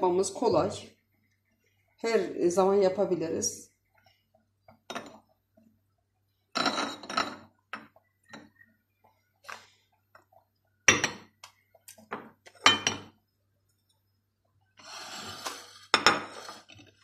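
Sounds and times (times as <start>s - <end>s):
glass jars clinking: 4.8s - 5.2s, 6.5s - 8.6s, 10.8s - 11.4s, 12.1s - 13.2s.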